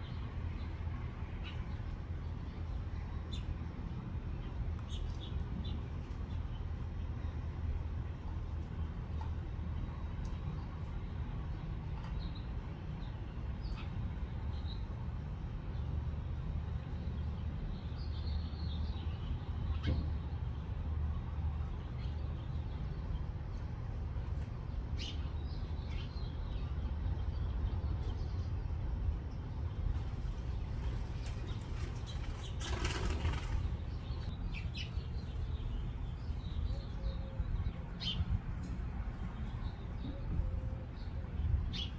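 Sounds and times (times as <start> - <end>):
small birds chirping: 0.0 - 7.5, 10.2 - 14.9, 21.6 - 41.9.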